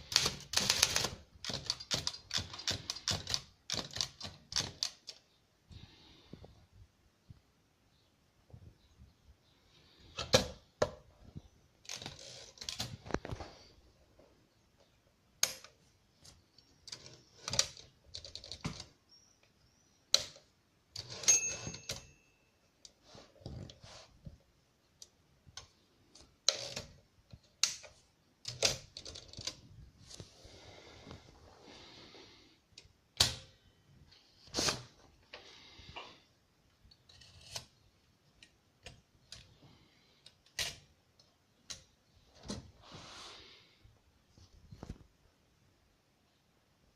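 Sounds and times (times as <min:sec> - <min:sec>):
typewriter bell ring: 0:21.0 - 0:22.5.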